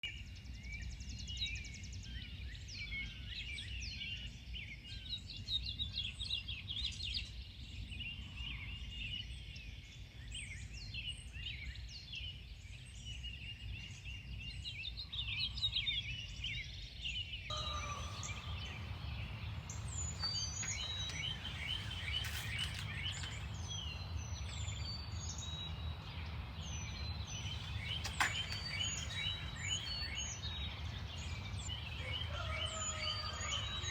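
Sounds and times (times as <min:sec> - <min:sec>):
songbirds chirping and singing: 0:00.2 - 0:33.9
steady low rumble: 0:17.5 - 0:33.8.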